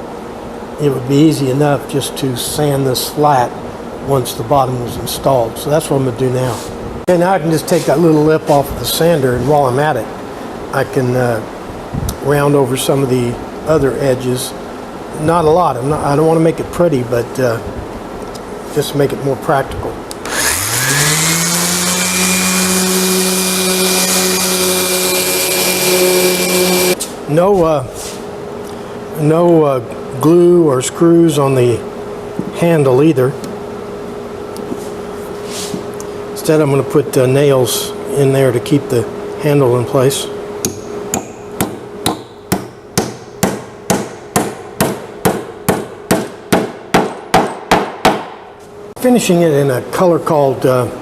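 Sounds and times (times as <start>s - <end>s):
electric sander on wood: 20.2s - 27.0s
hammer striking nails into wood: 40.7s - 48.4s.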